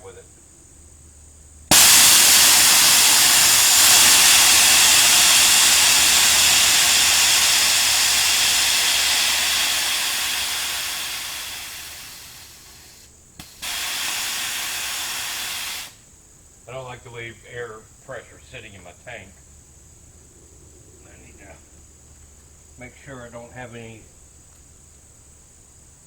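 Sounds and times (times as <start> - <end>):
steady hiss: 0.0 - 26.0
compressed air hissing from tank: 1.7 - 16.1.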